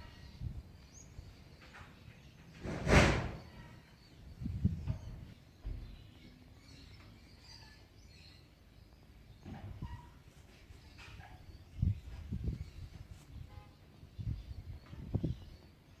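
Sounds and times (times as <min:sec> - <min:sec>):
wind gusts on microphone: 0:02.6 - 0:03.6, 0:04.2 - 0:05.4, 0:11.4 - 0:15.6
faint bird chirps: 0:03.4 - 0:16.0.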